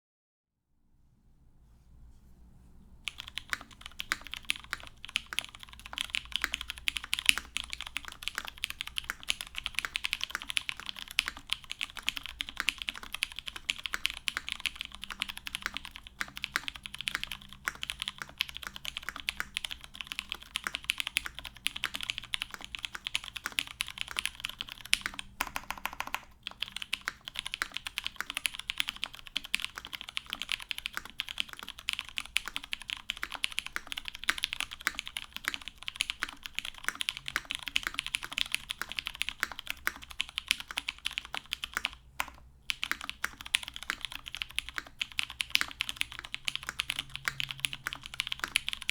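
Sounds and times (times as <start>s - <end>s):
fast mechanical keyboard typing: 3.0s - 48.9s.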